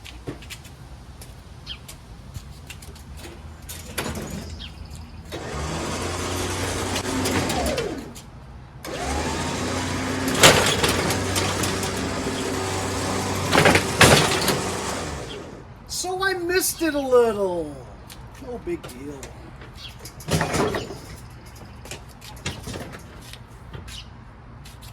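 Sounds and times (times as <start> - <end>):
lawn tractor engine running: 5.3 - 8.2, 8.8 - 15.6.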